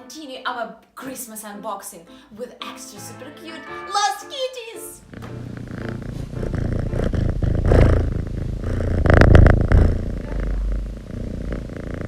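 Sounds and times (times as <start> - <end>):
cat purring: 5.0 - 12.0.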